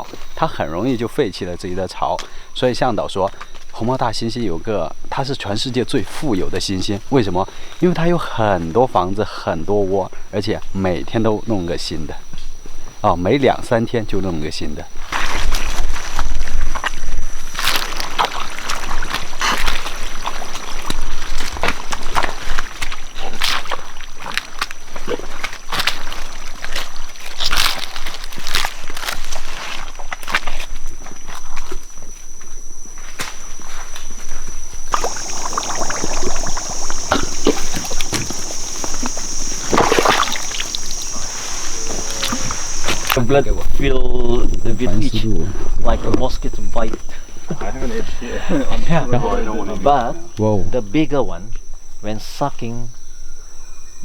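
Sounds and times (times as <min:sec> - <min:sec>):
boots squelching through mud: 0:15.1 - 0:31.2, 0:34.9 - 0:43.2
steady high-pitched buzz: 0:30.9 - 0:53.0
steady high whine: 0:31.1 - 0:51.2.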